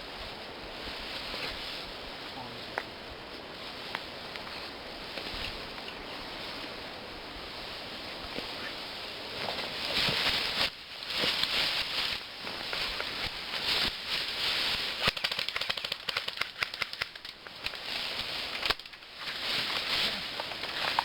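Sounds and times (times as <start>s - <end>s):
rustling: 0.0s - 21.0s
rapid sharp clicks: 15.0s - 17.8s.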